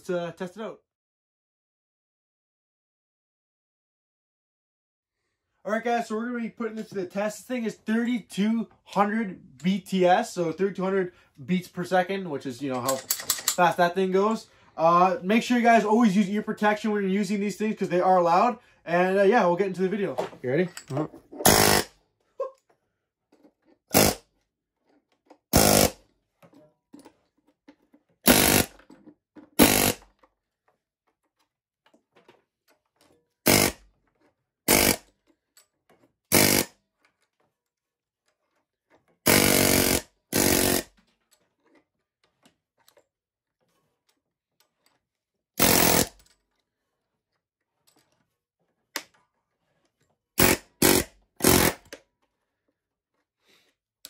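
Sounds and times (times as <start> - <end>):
pneumatic air hammer bursts: 21.4 - 21.9, 23.9 - 24.2, 25.5 - 26.0, 28.3 - 28.7, 29.6 - 30.0, 33.4 - 33.8, 34.7 - 35.1, 36.3 - 36.7, 39.3 - 40.9, 45.6 - 46.2, 50.4 - 51.9.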